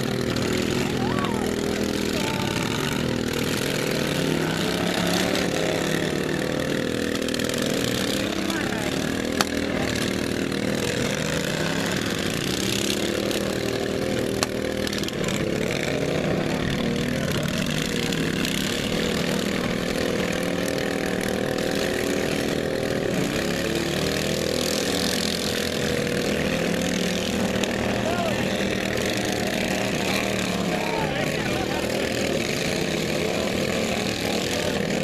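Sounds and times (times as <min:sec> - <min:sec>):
lawn mower engines revving: 0:00.0 - 0:35.0.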